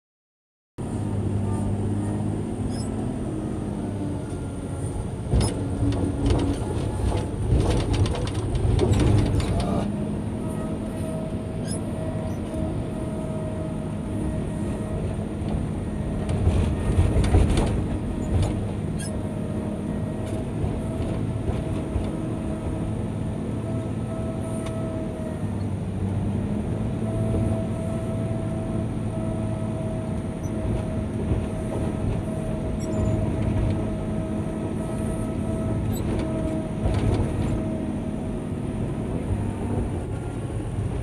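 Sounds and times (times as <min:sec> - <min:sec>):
diesel engine running: 0:00.8 - 0:41.0
clattering and rattling: 0:05.3 - 0:09.8.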